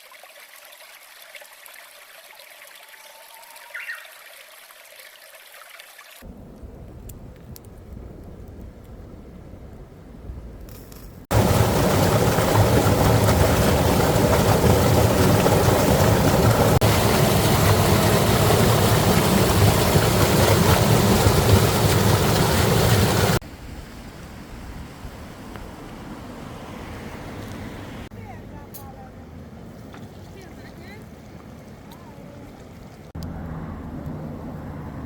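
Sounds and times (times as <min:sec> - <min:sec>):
loud rushing noise: 0:11.3 - 0:23.4.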